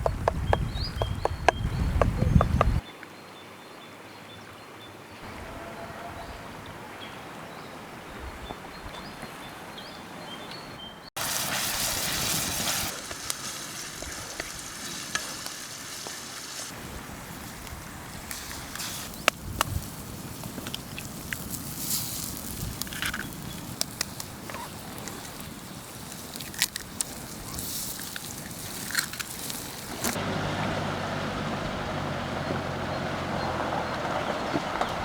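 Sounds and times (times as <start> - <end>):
bird chirps: 0.0 - 2.9
food sizzling in a pan: 11.2 - 16.8
faint crackles: 11.2 - 30.2.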